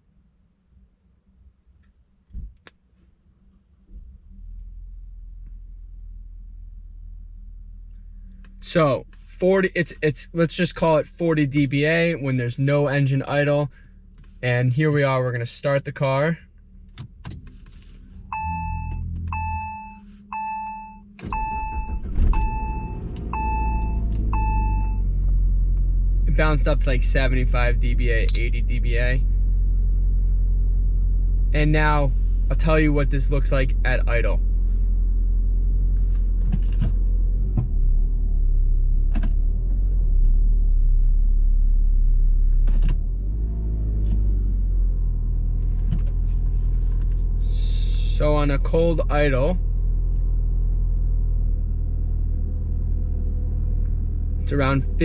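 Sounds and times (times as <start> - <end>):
car engine starting and running: 1.2 - 55.0
warning chime beeping: 18.3 - 25.0.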